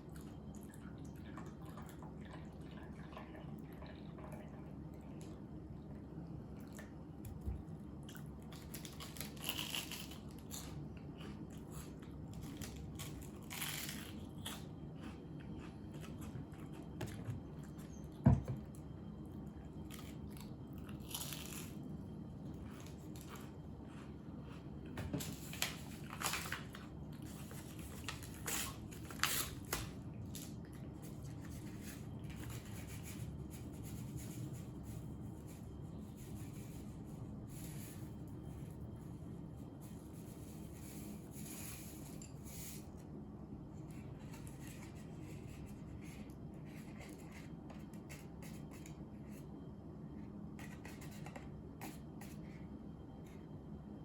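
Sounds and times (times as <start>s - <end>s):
low background hum: 0.0s - 54.0s
person chewing: 9.4s - 16.9s, 22.5s - 25.0s.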